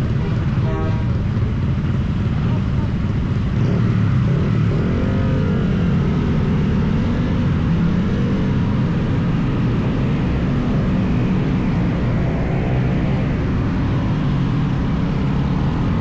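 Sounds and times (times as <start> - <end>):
motorcycle engine running: 0.0 - 11.1
wind and road rush: 0.0 - 16.0.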